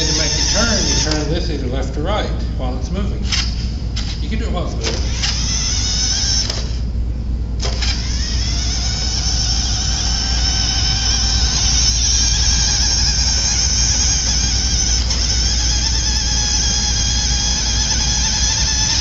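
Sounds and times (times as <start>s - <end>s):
toy car electric motor whining: 0.0s - 1.3s, 4.9s - 6.8s, 7.6s - 19.0s.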